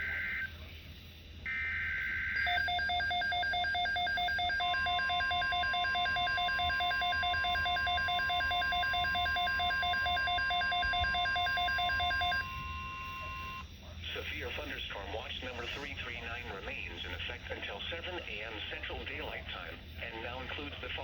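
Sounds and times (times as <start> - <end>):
steady warning alarm tone: 0.0 - 21.0
rapidly pulsing alert beeps: 2.2 - 13.6.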